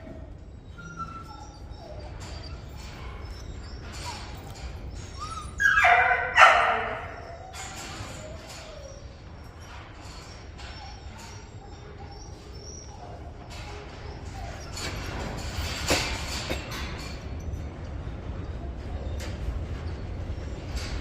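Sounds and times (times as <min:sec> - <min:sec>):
puppies whimpering and yipping: 0:00.0 - 0:17.6
puppy yelps: 0:00.6 - 0:15.3.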